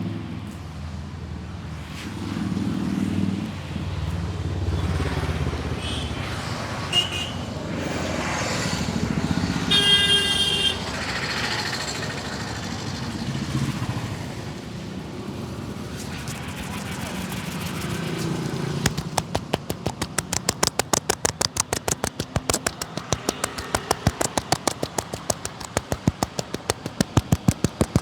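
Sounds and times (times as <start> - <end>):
road traffic passing: 1.9 - 28.0
vehicle horn: 6.9 - 7.4, 9.7 - 10.9.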